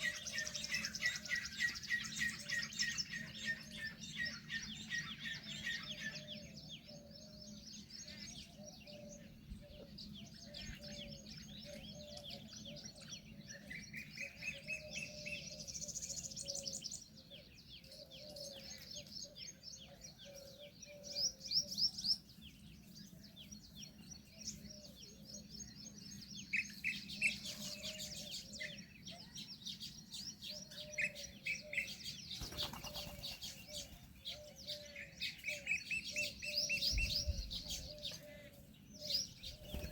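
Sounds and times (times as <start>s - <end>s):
high bird chirps and trills: 19.9s - 39.9s.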